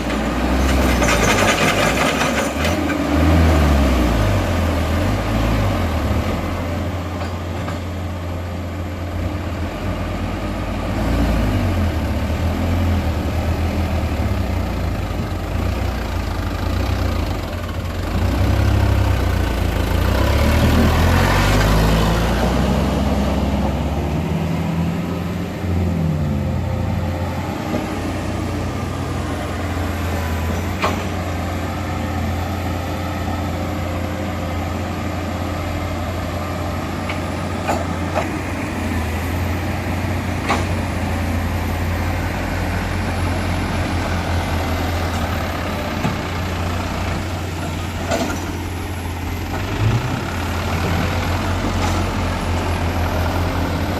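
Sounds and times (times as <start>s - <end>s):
heavy diesel engines working: 0.0s - 53.9s.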